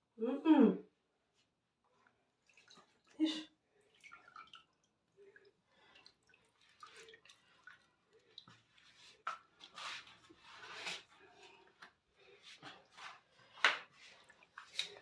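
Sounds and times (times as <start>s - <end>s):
water dripping: 1.9s - 9.8s
wet swishes of water: 2.0s - 15.0s.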